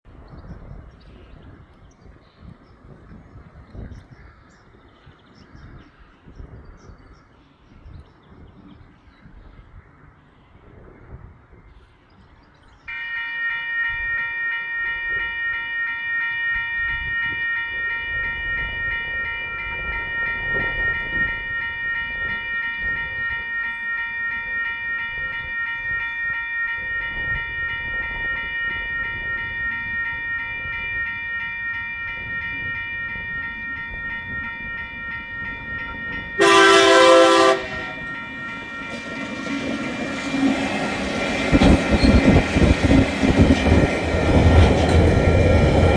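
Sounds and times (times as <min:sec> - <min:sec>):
locomotive engine and wheels: 0:00.1 - 0:45.9
level crossing warning bells: 0:12.8 - 0:45.9
locomotive horn blast: 0:36.0 - 0:40.6.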